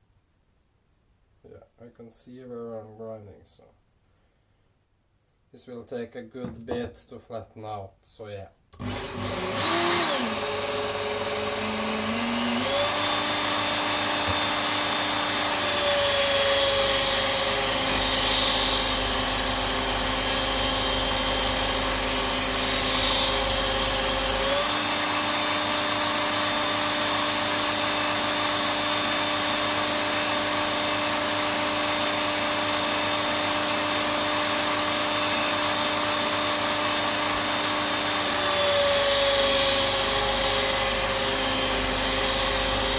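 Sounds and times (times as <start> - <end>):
sharpener motor whine: 8.8 - 42.9.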